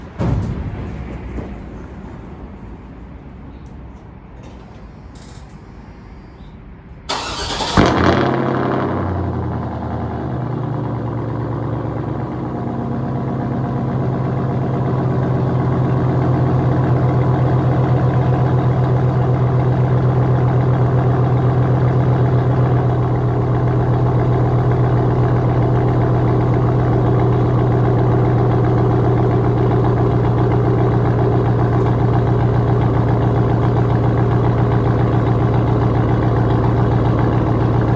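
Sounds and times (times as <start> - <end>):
engine cranking: 7.1 - 8.4
loud engine idling: 7.1 - 37.9.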